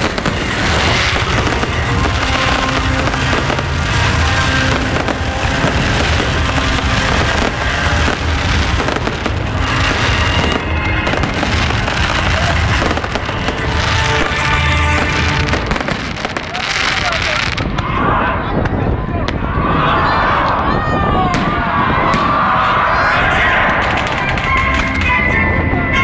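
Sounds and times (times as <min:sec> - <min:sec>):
loud music over sound system: 0:00.0 - 0:17.6
fireworks bursting and crackling: 0:00.0 - 0:18.0, 0:21.3 - 0:22.6, 0:23.6 - 0:25.2.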